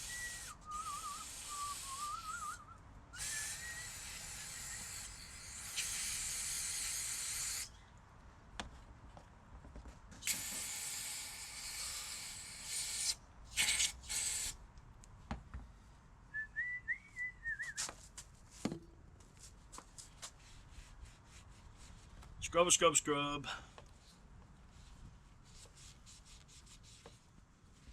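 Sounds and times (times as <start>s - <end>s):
aerosol can spraying: 0.0s - 2.4s, 3.2s - 7.7s, 10.2s - 14.6s
man whistling: 0.0s - 5.0s, 16.3s - 17.9s.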